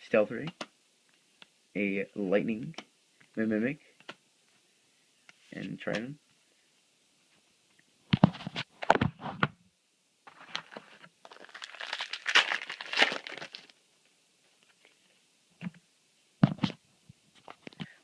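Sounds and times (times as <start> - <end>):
foil wrapper crinkling and tearing: 10.4 - 13.8.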